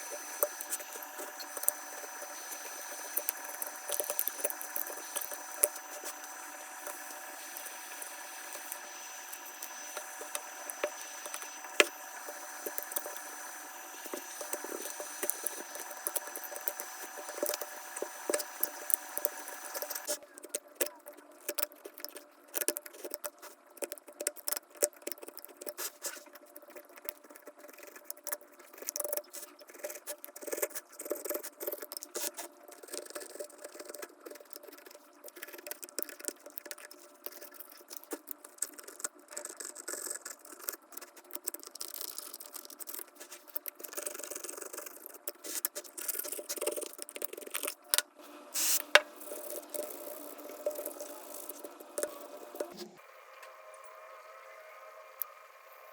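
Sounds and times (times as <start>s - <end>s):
hand tools clicking and scraping: 0.0s - 20.2s.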